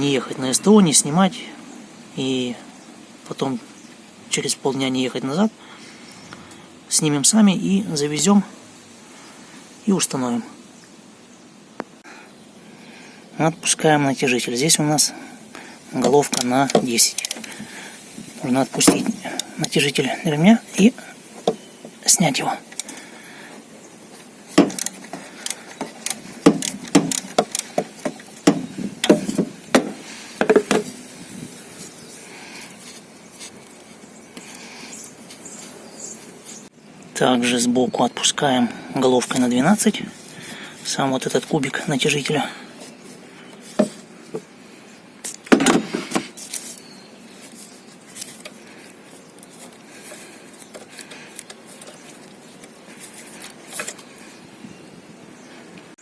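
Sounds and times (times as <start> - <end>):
hand tools clanking on metal: 24.6 - 31.0.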